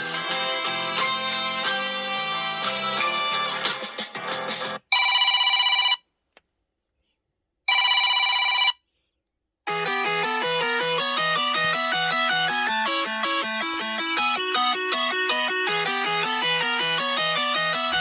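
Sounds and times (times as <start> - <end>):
melodic phone ringtone: 0.0 - 3.7, 5.0 - 6.0, 7.7 - 8.8, 9.7 - 18.0
telephone ring ringtone: 4.9 - 6.0, 7.7 - 8.9, 9.7 - 18.0.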